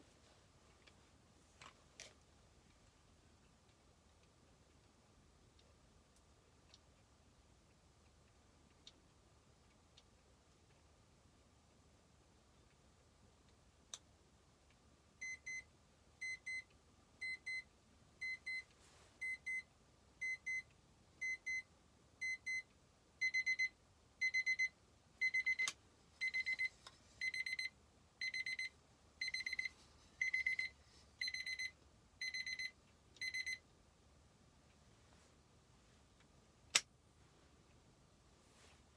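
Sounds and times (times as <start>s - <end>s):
alarm clock beeping: 23.2s - 33.6s.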